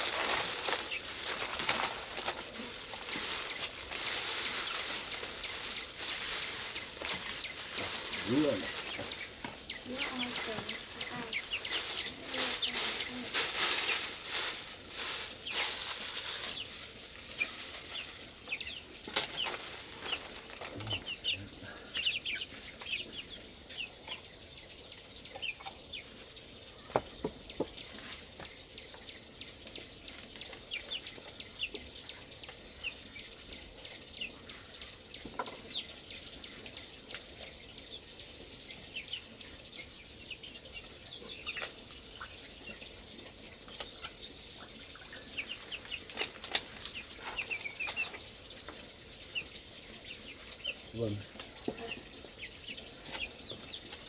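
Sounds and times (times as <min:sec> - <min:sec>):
rustling or flapping noise: 0:00.0 - 0:09.2, 0:09.9 - 0:18.2
insects droning: 0:00.0 - 0:54.0.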